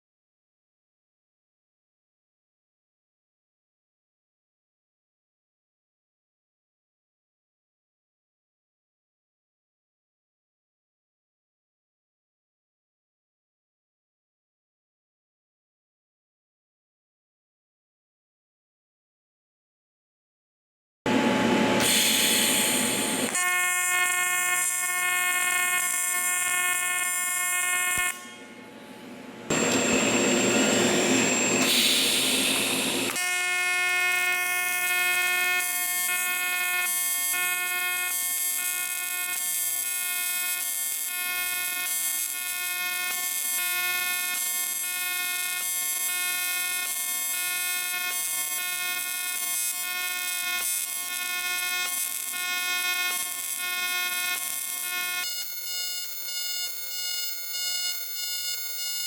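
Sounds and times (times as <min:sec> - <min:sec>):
welding arc buzzing with hiss: 0:21.1 - 0:28.4, 0:29.5 - 0:59.0.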